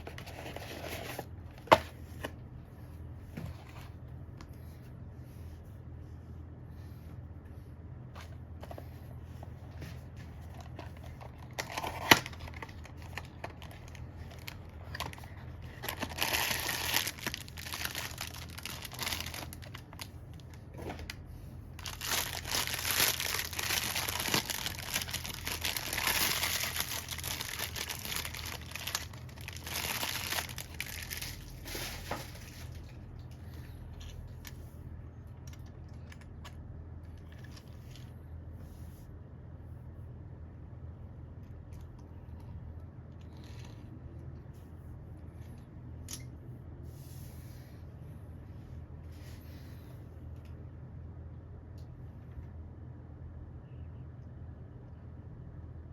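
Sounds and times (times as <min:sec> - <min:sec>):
steady low hum: 0:00.0 - 0:55.9
packaging crinkling and tearing: 0:10.4 - 0:21.2, 0:21.8 - 0:33.0.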